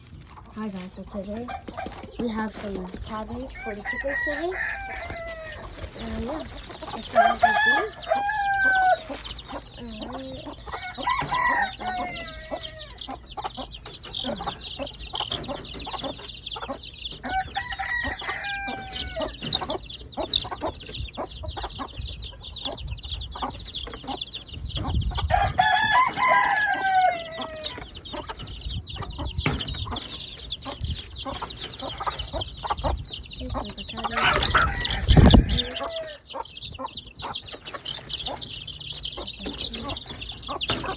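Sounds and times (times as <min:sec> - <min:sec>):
chickens clucking: 0:00.0 - 0:40.9
rooster crowing: 0:03.6 - 0:05.8, 0:07.1 - 0:09.2, 0:10.7 - 0:13.1, 0:17.2 - 0:19.4, 0:25.3 - 0:27.8, 0:34.1 - 0:36.3.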